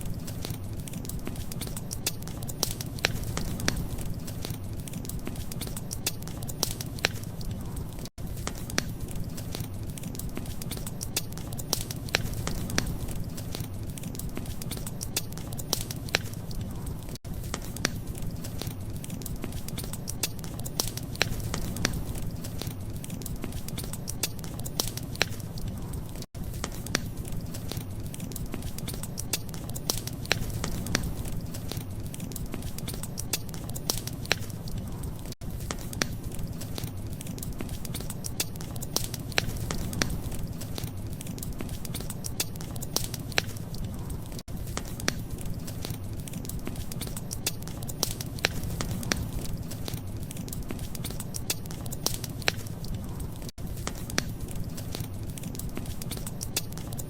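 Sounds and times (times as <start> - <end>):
low fire rumble: 0.0 - 57.0
wood fire crackling and popping: 0.0 - 57.0.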